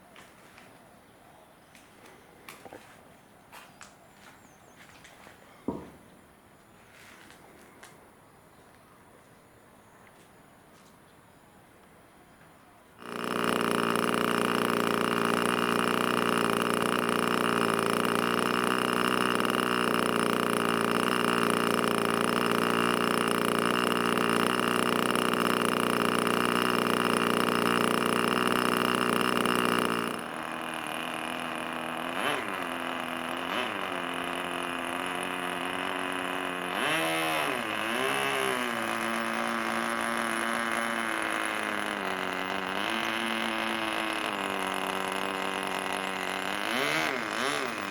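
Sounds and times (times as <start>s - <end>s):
model aircraft engine running: 13.0s - 47.9s.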